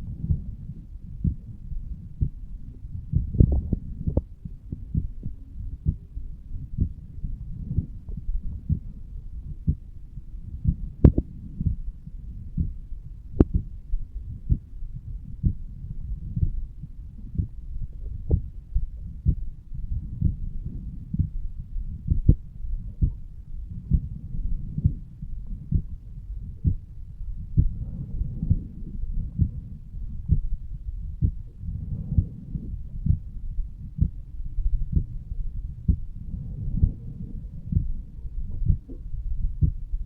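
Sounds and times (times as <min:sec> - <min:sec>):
heartbeat thumps: 0:00.0 - 0:40.0
soft whoosh of blood flow: 0:26.6 - 0:40.0.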